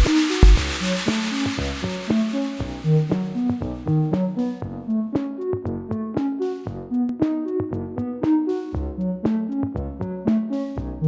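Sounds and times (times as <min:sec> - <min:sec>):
plucked synthesizer notes: 0:00.0 - 0:11.0.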